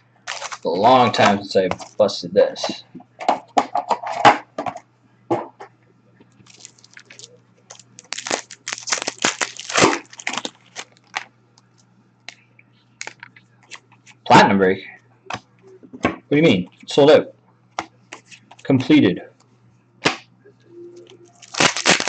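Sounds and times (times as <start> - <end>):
faint low hum: 0.0 - 22.0
wrappers crinkling and tearing: 0.3 - 0.7, 6.4 - 11.3, 21.4 - 22.0.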